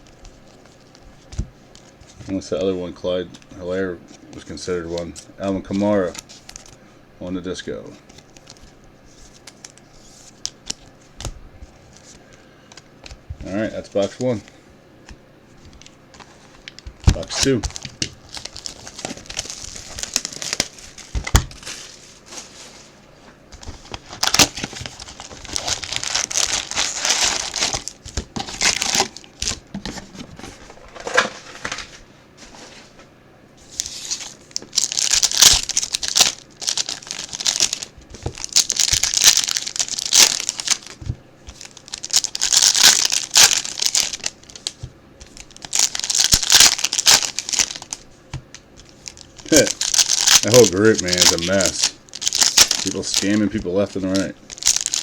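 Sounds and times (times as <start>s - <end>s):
plastic wrapping tearing and crinkling: 15.8s - 22.5s, 23.6s - 29.7s, 33.7s - 48.1s, 48.8s - 55.0s.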